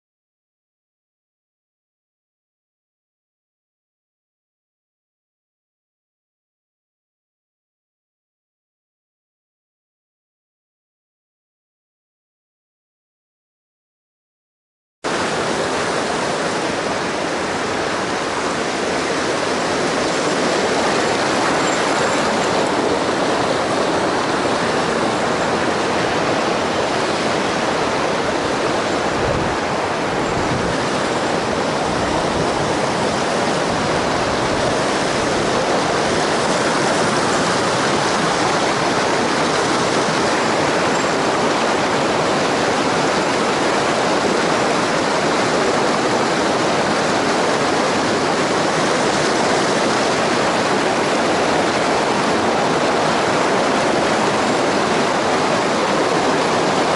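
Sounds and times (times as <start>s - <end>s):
stream water rushing: 15.1s - 56.9s.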